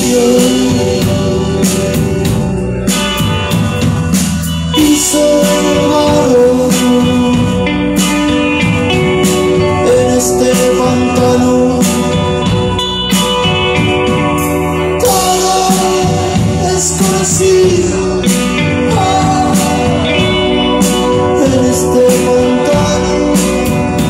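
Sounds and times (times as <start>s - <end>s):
person singing long notes: 0.0s - 2.0s, 15.0s - 24.0s
drums at a steady beat: 0.0s - 24.0s
guitar: 0.0s - 24.0s.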